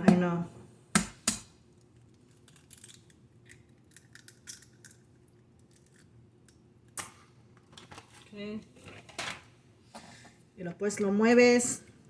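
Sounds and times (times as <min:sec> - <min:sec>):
eggshell crackling: 0:01.8 - 0:06.6.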